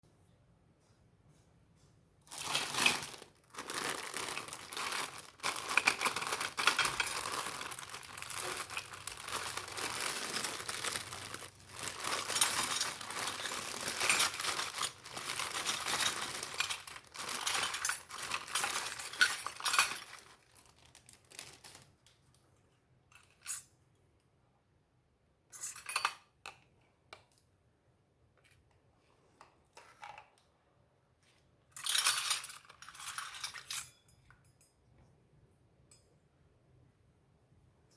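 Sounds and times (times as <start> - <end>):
handling sounds: 2.2 - 21.9
plastic packaging crinkling: 2.3 - 22.0.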